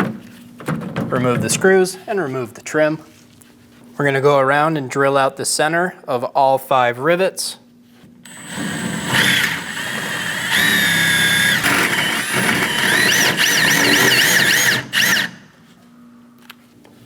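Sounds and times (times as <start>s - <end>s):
power drill squealing on rivets: 8.3s - 15.4s.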